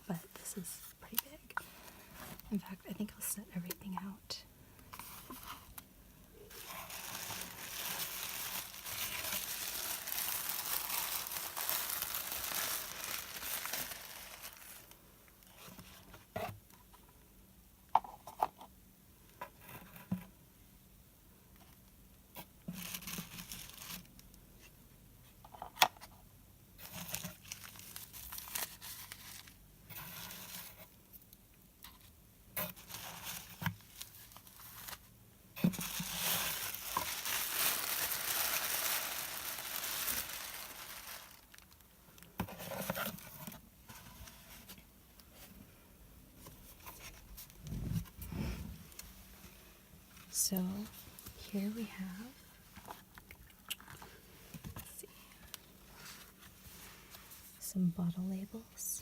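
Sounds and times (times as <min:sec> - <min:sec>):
packaging crinkling and tearing: 0:06.5 - 0:15.0, 0:22.7 - 0:24.3, 0:26.8 - 0:29.6, 0:32.7 - 0:43.6.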